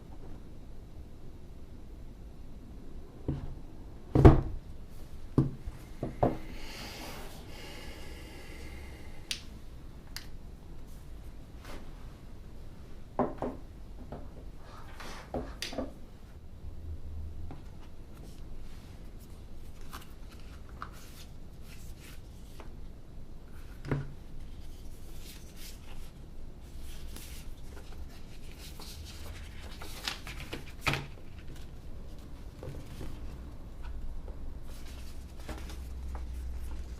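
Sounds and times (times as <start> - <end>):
cardboard packaging rustling: 26.8 - 33.6.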